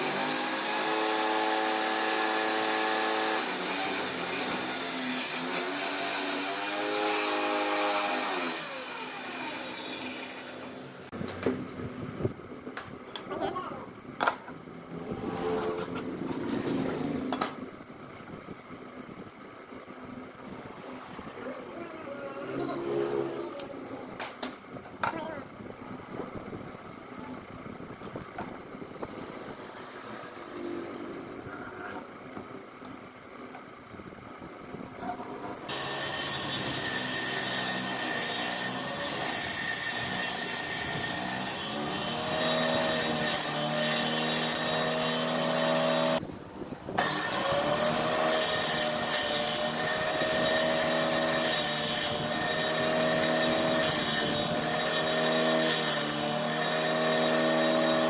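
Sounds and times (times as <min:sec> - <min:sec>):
electric drill saw cutting wood: 0:00.0 - 0:11.1, 0:35.7 - 0:46.2, 0:47.0 - 0:58.0.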